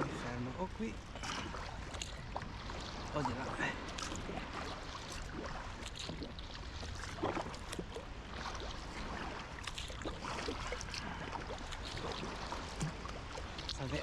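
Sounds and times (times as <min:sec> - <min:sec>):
paddle splashing and dripping: 0:00.0 - 0:14.0
water lapping at hull: 0:00.0 - 0:14.0.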